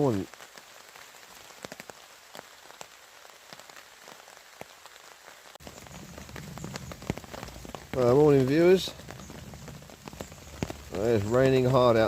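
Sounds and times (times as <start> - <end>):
rain pattering on a tarp: 0.0 - 12.0.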